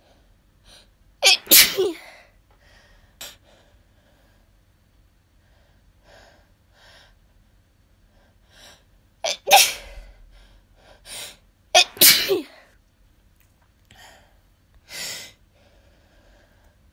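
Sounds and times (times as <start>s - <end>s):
person sneezing: 1.2s - 2.2s, 9.3s - 10.0s, 11.8s - 12.7s.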